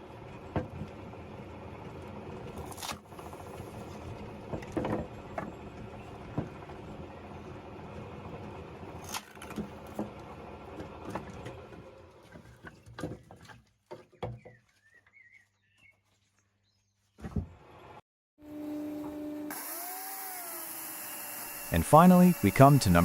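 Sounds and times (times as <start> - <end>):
steady machine hum: 18.4 - 23.0.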